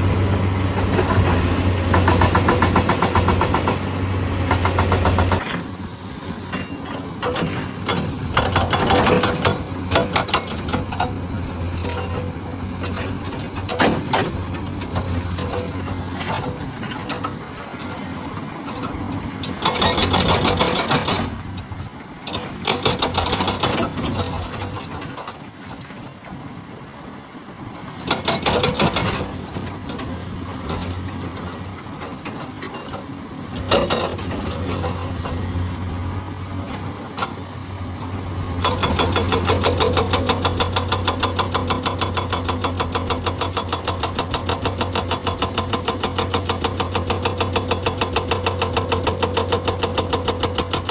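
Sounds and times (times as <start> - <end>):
hydraulic breaker hammering rock: 0.0 - 17.9, 18.8 - 21.7, 22.3 - 25.4, 28.0 - 35.5, 38.2 - 50.9
diesel engine humming: 0.0 - 22.0.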